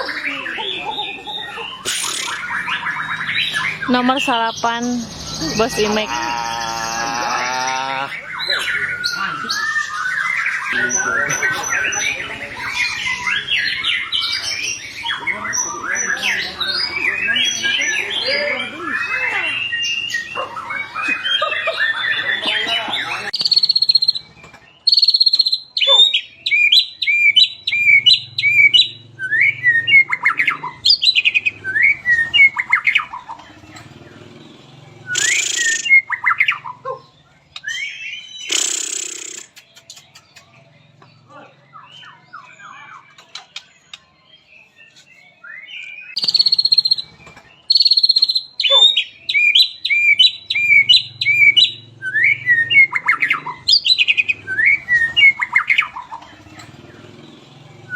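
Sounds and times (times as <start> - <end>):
harsh rasping bird notes: 0.0 - 4.0, 26.6 - 36.6, 37.6 - 40.3
bird singing whistled notes: 1.5 - 6.1, 8.3 - 22.6, 23.3 - 33.8, 34.7 - 36.8, 37.5 - 40.5, 41.2 - 57.9.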